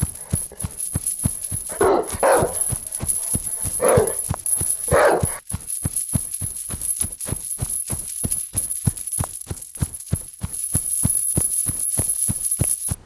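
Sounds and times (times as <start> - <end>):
dog barking: 0.0 - 5.4
rhythmic beat of ticks and thumps: 0.0 - 13.0.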